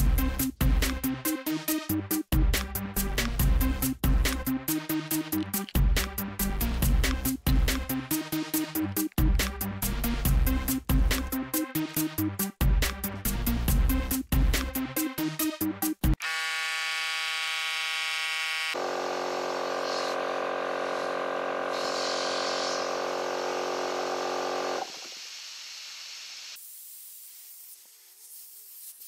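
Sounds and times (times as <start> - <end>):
air compressor motor humming: 16.2 - 25.2
air hissing: 19.7 - 29.0.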